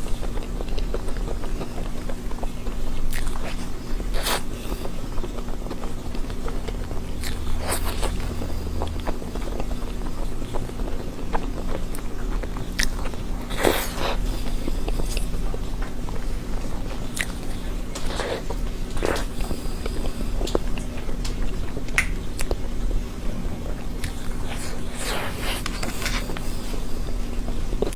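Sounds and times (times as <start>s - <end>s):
biting and chewing: 0.0s - 27.9s
steady low hum: 0.0s - 27.9s.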